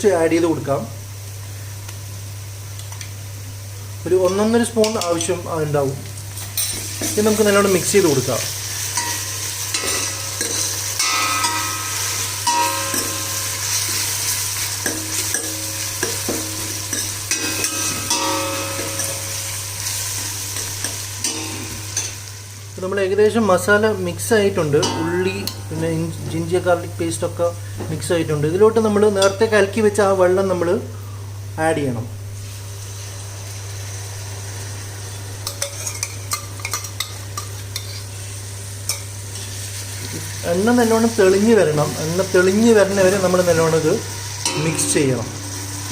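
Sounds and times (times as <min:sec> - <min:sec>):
onions sizzling in hot oil: 0:00.0 - 0:27.8, 0:32.2 - 0:45.9
steady low hum: 0:00.0 - 0:40.4, 0:41.6 - 0:45.9
utensil scraping a pan: 0:35.4 - 0:38.2.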